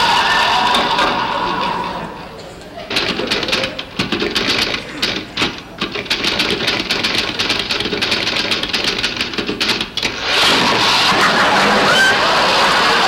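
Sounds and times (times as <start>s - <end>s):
typewriter keys clattering: 2.9s - 10.2s.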